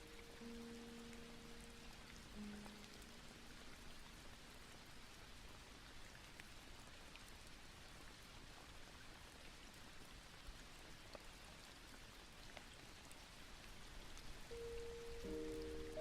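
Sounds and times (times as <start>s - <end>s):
faint steady hiss: 0.0s - 16.0s.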